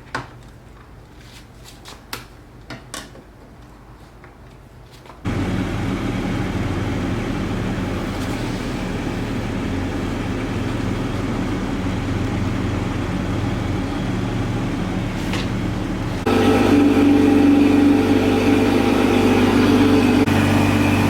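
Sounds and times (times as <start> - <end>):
car engine idling: 5.3 - 21.0.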